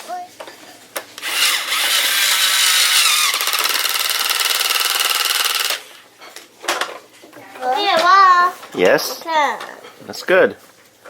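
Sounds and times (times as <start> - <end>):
toy drill whining and rattling: 1.2 - 6.0.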